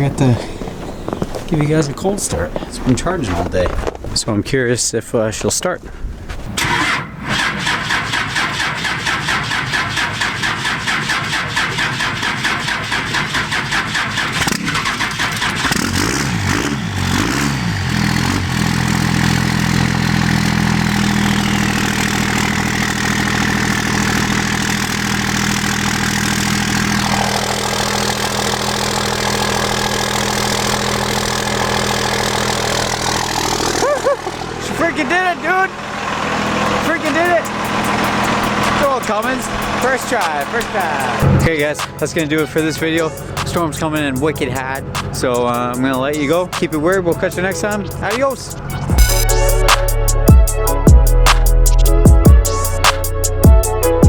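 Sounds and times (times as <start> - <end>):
engine starter cranking: 6.5 - 47.1
diesel engine idling: 6.8 - 54.0.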